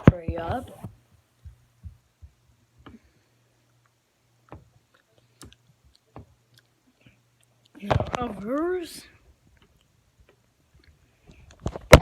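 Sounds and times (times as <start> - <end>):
low steady hum: 0.0 - 12.0
soft chewing: 2.8 - 7.8, 9.3 - 11.6.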